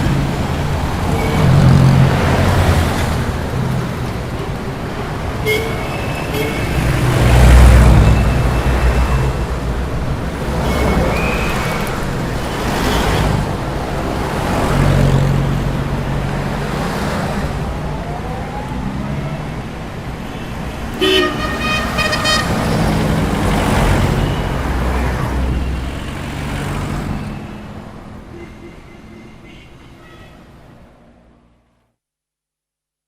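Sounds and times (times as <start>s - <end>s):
road traffic passing: 0.0s - 31.8s
vehicle horn tooting: 5.4s - 6.9s, 21.0s - 22.8s.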